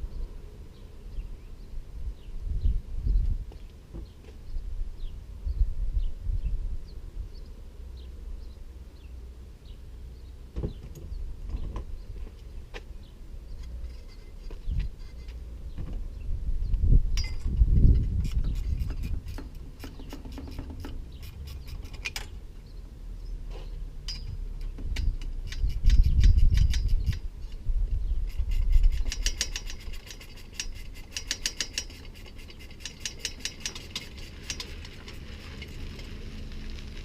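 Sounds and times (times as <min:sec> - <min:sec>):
hand tools clicking and knocking: 0:17.2 - 0:22.4, 0:24.0 - 0:27.2, 0:28.3 - 0:36.0.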